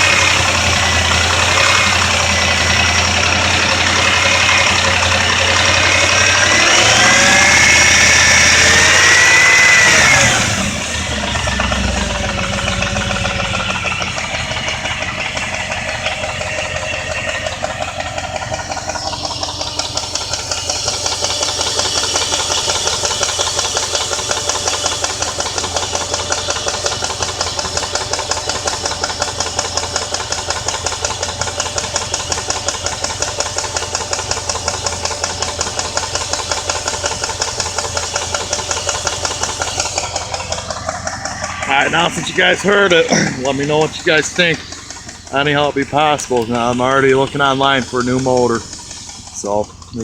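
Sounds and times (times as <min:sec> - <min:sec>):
car engine running: 0:00.0 - 0:50.0
rapid engine ticking: 0:00.0 - 0:50.0.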